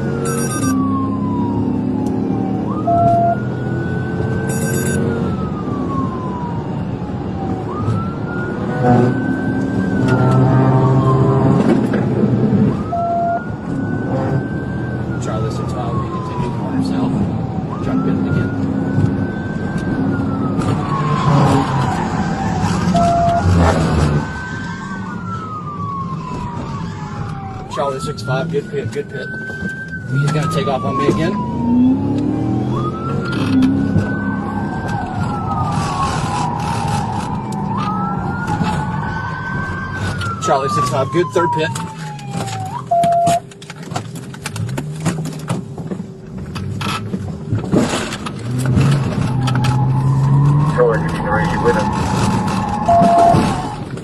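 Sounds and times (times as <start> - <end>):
police siren wailing: 0.0 - 43.7, 46.8 - 54.0
engine and road noise: 0.0 - 54.0
loud steady beep: 0.2 - 0.8, 4.5 - 5.0, 52.9 - 53.4.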